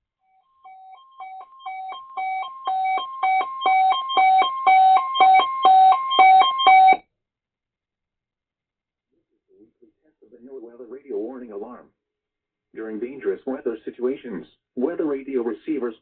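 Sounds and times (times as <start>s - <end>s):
alternating alert beeping tones: 0.4s - 7.0s.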